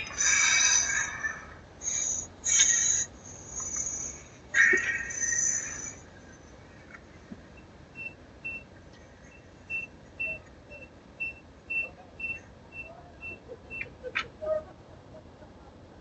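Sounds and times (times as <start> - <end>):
high-pitched alarm beeps: 0.0 - 6.1, 7.6 - 13.8.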